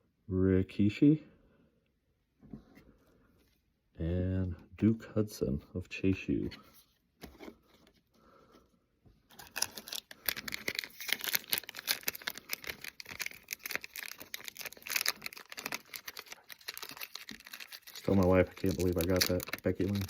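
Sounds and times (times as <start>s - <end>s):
foil wrapper crinkling and tearing: 9.3s - 20.0s.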